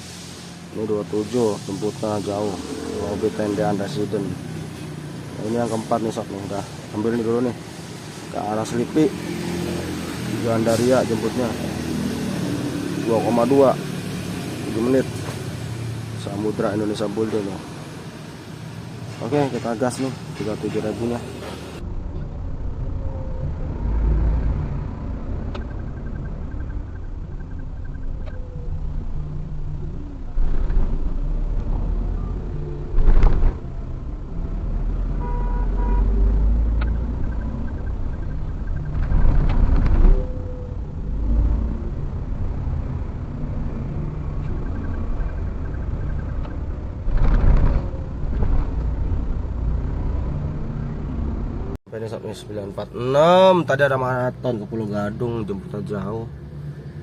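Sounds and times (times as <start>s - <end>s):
car engine and road rumble: 0.0s - 57.0s.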